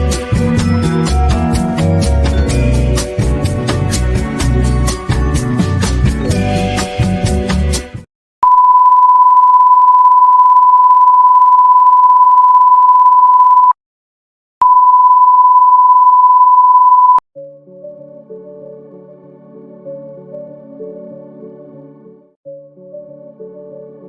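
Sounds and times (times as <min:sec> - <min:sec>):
soft sustained keyboard music: 0:00.0 - 0:07.8, 0:17.4 - 0:24.0
song: 0:00.0 - 0:08.0
electronic test tone beep: 0:08.4 - 0:13.8, 0:14.6 - 0:17.2.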